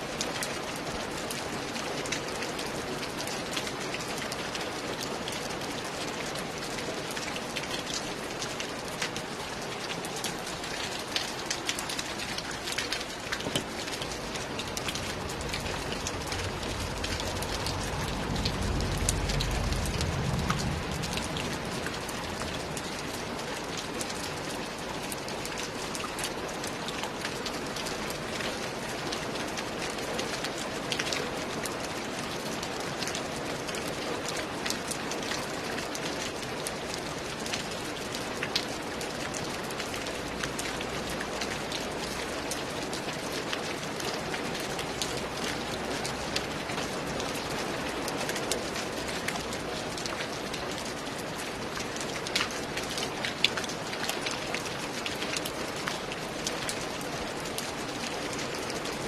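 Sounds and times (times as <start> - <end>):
rain falling: 0.0 - 59.0
low rumble: 14.4 - 23.3.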